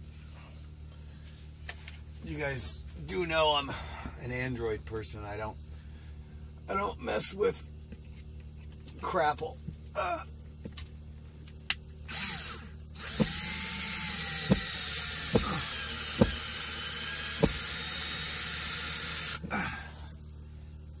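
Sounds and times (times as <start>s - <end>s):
power drill whining: 12.1s - 19.4s.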